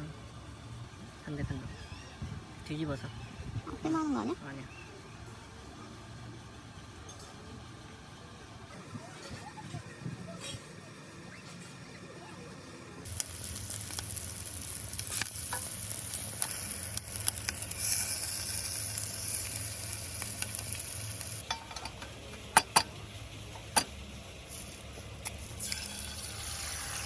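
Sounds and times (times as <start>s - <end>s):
food sizzling in a pan: 13.1s - 27.0s.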